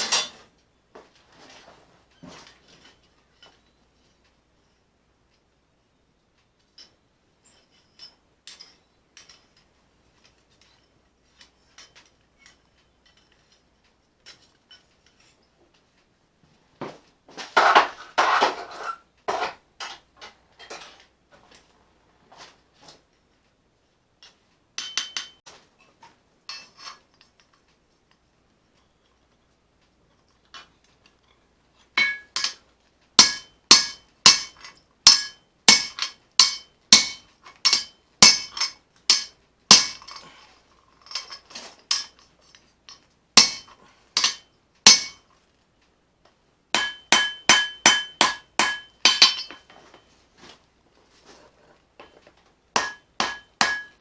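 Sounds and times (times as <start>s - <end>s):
hammer blows on anvil: 32.0s - 32.6s, 33.2s - 40.1s, 43.4s - 45.2s, 46.8s - 50.0s, 52.8s - 54.0s.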